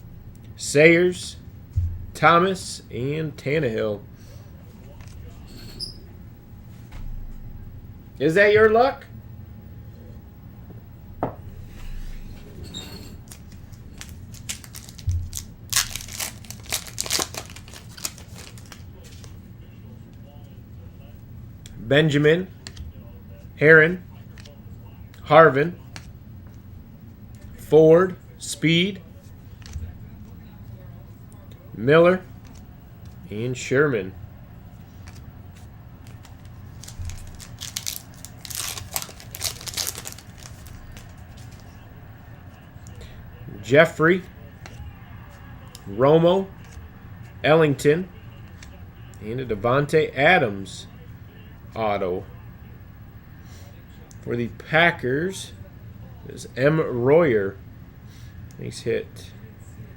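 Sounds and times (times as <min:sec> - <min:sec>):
wrapper tearing and crinkling: 0:13.3 - 0:18.8, 0:36.0 - 0:41.6.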